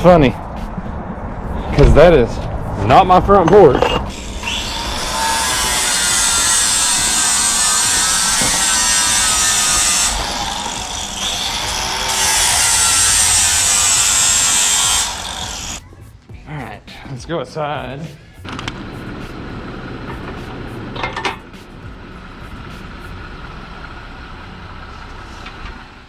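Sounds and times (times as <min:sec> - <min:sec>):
power grinder grinding metal: 0:03.5 - 0:15.8.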